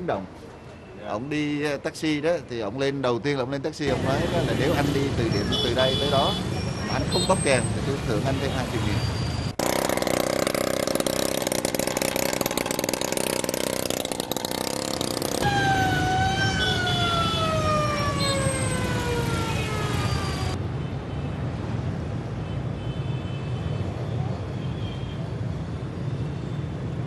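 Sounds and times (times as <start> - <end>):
vehicle engines: 3.8 - 20.8
car horns: 3.9 - 9.0, 15.3 - 20.6.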